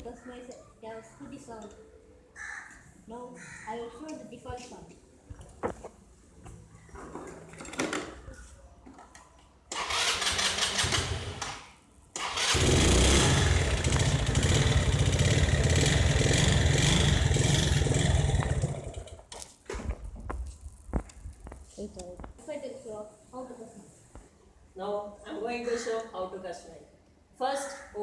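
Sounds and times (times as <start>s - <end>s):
scooter engine starting and running: 9.7s - 19.3s.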